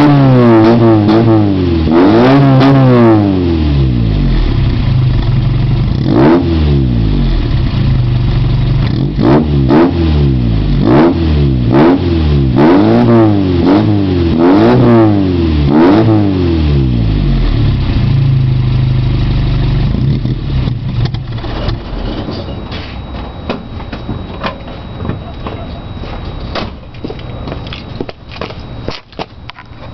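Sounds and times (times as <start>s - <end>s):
car engine revving: 0.0s - 22.3s
car engine idling: 3.8s - 6.2s, 6.8s - 9.2s, 16.8s - 29.9s.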